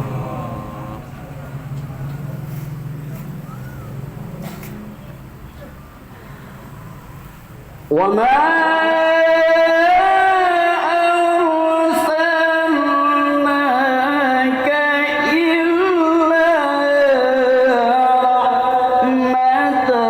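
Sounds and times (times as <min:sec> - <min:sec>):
man chanting recitation: 0:00.0 - 0:01.7, 0:07.9 - 0:20.0.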